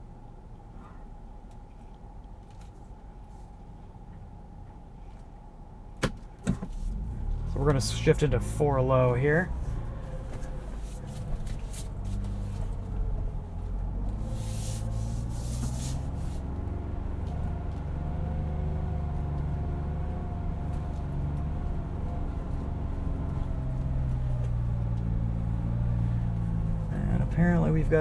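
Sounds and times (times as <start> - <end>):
engine running at low revs: 6.4 - 28.0
brief hiss: 14.2 - 16.3.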